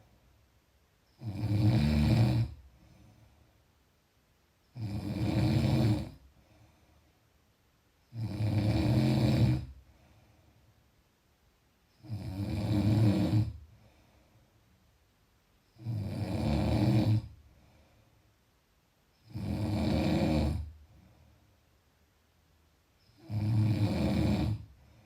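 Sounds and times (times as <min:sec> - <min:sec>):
quiet breathing: 0:00.0 - 0:03.9, 0:04.6 - 0:11.1, 0:11.8 - 0:15.0, 0:15.6 - 0:21.9, 0:23.0 - 0:25.0
person snoring: 0:01.2 - 0:02.6, 0:04.7 - 0:06.2, 0:08.1 - 0:09.8, 0:12.0 - 0:13.6, 0:15.8 - 0:17.4, 0:19.2 - 0:20.7, 0:23.1 - 0:24.8.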